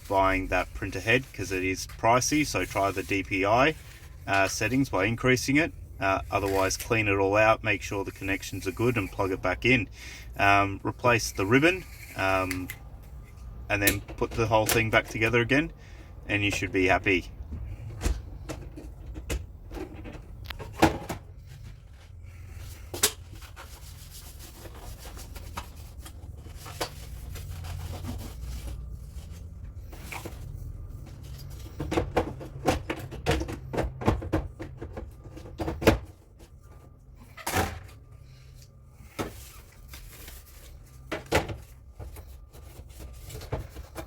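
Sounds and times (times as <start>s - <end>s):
low steady hum: 0.0s - 44.0s
plastic parts clicking and knocking: 31.6s - 36.2s.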